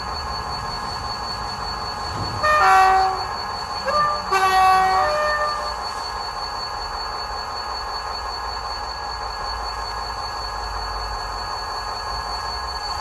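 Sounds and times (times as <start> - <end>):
locomotive engine idling: 0.0 - 6.4
locomotive two-tone horn: 2.0 - 6.1.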